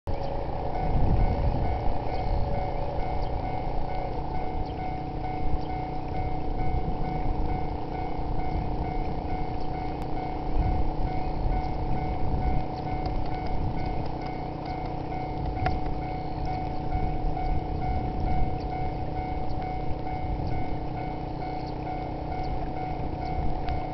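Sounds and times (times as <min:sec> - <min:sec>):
continuous low rumble: 0:00.1 - 0:23.9
level-crossing alarm bell: 0:00.1 - 0:23.9.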